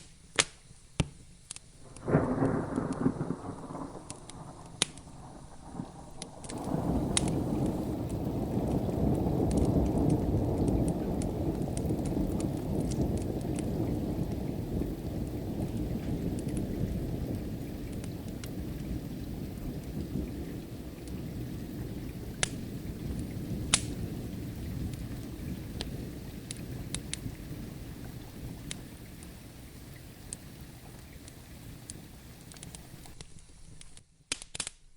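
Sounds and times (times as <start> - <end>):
steady rain: 0.0 - 34.0
wood fire crackling and popping: 0.0 - 34.9
thunder rumbling: 1.8 - 33.2.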